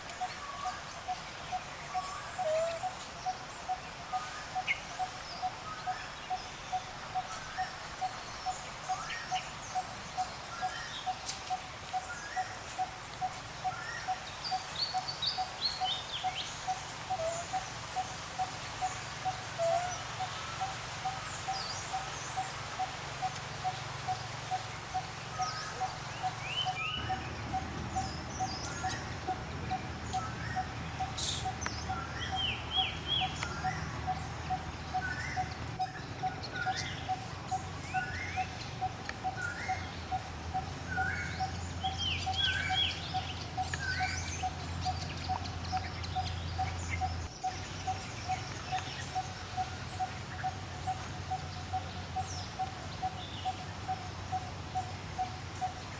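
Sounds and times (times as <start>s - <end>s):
low steady rumble: 21.1s - 55.9s
bird chirps and calls: 23.2s - 55.8s.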